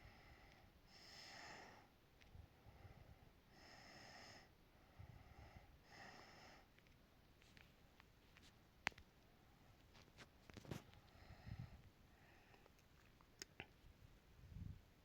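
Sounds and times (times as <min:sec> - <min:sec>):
faint breathing: 0:00.0 - 0:06.8, 0:10.7 - 0:12.8.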